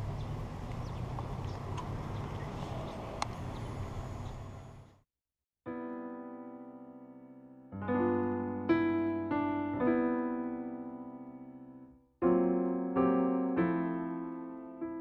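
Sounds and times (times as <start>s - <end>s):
slow piano chords: 5.7s - 15.0s.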